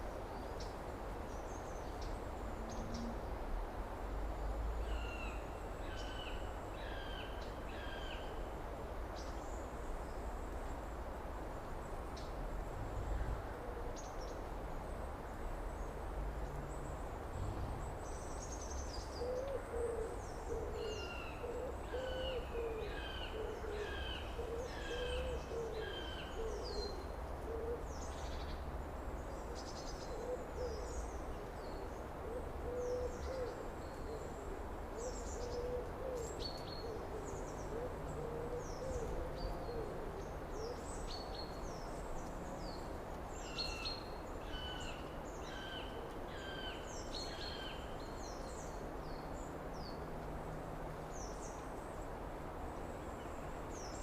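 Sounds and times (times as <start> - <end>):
songbirds chirping: 0.0 - 54.0
steady low rumble: 16.0 - 18.9.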